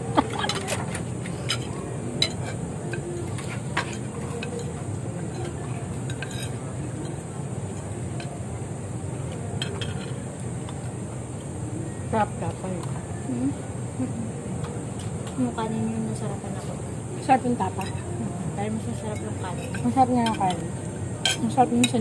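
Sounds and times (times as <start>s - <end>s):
low background hum: 0.0s - 22.0s
cutlery clinking on a plate: 0.2s - 7.2s, 9.6s - 10.2s, 19.1s - 20.6s, 21.2s - 22.0s.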